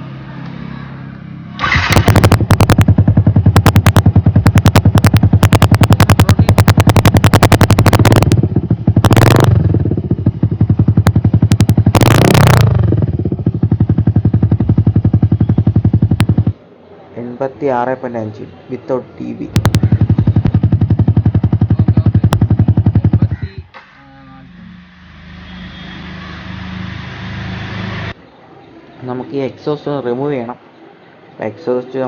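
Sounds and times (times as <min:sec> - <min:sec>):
motorcycle engine idling and revving: 0:00.0 - 0:16.6, 0:19.5 - 0:23.6, 0:24.2 - 0:28.2.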